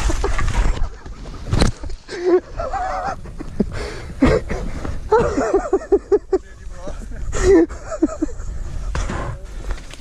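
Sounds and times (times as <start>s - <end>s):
heavy breathing: 3.6s - 5.1s.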